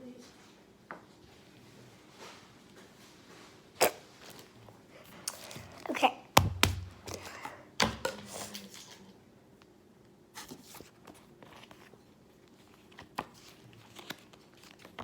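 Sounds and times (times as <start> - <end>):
crinkling and rustling: 10.4 - 15.0.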